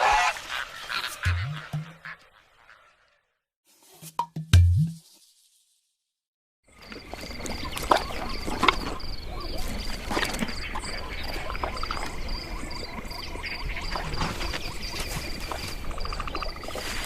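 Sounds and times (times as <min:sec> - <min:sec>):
frogs croaking: 0:06.7 - 0:17.0.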